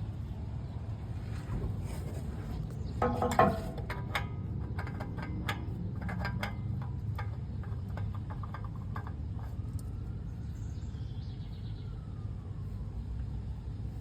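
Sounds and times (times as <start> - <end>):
oil filter clicks and knocks: 1.5 - 9.9.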